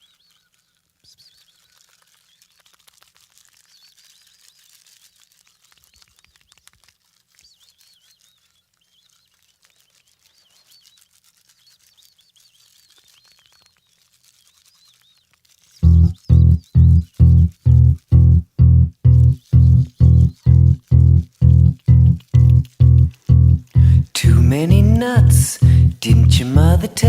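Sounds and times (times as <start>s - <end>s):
small birds chirping: 0.0s - 2.7s, 3.6s - 4.7s, 7.3s - 24.1s.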